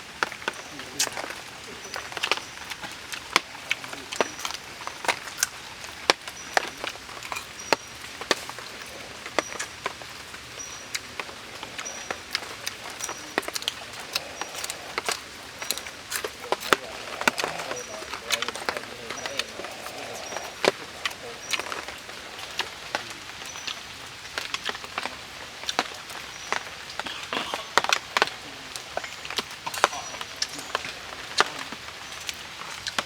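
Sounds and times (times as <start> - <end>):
eating crunches and clicks: 0.0 - 33.0.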